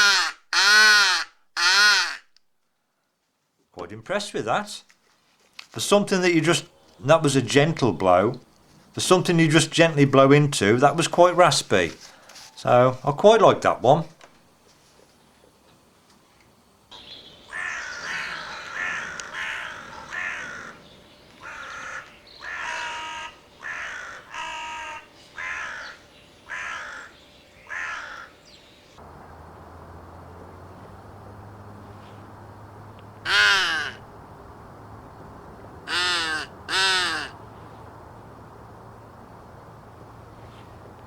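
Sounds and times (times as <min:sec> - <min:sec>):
crow call caws: 0:00.0 - 0:02.3, 0:17.4 - 0:20.8, 0:21.4 - 0:28.4, 0:33.2 - 0:34.1, 0:35.9 - 0:37.4.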